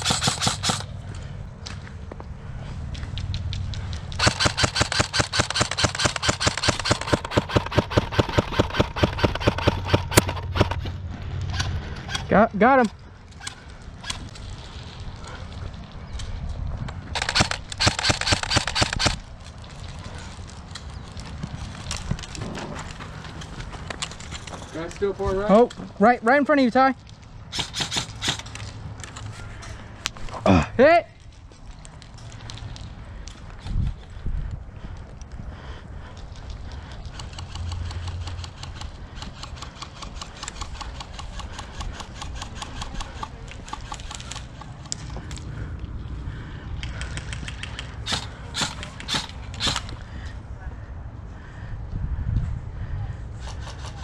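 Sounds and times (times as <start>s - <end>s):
airsoft rifle firing rapidly: 0.0s - 0.9s, 4.2s - 10.8s, 17.1s - 19.2s, 27.5s - 28.5s, 37.2s - 44.6s, 48.0s - 49.9s
scattered clicks: 2.9s - 14.7s, 16.2s - 25.8s, 36.2s - 45.9s, 46.7s - 50.0s.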